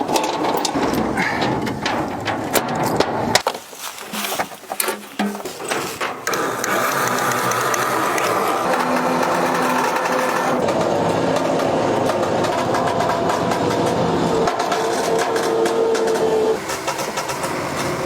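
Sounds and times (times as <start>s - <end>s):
winch motor whirring: 4.2s - 13.5s, 14.3s - 18.0s.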